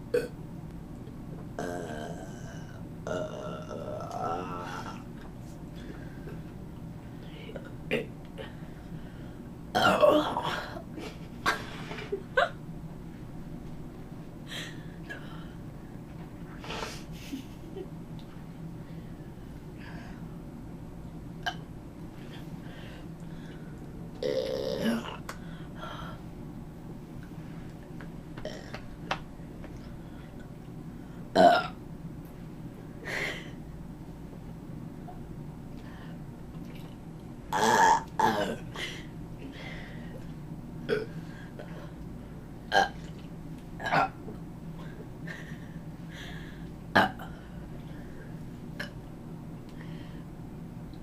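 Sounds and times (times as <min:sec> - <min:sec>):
girl burping: 0:00.1 - 0:00.3, 0:01.6 - 0:05.0, 0:09.8 - 0:10.8, 0:24.2 - 0:25.3, 0:37.5 - 0:38.6.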